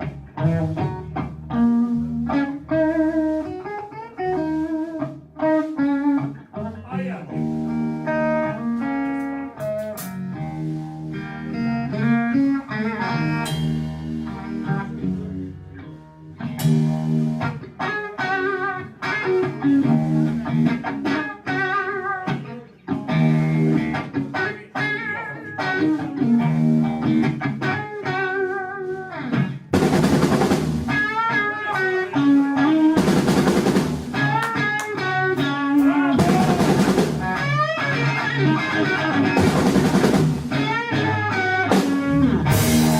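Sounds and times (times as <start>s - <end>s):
bass guitar: 0.0s - 42.9s
electric guitar solo: 0.0s - 42.9s
drum kit and cymbals: 7.3s - 15.4s, 16.4s - 21.3s, 25.6s - 42.9s.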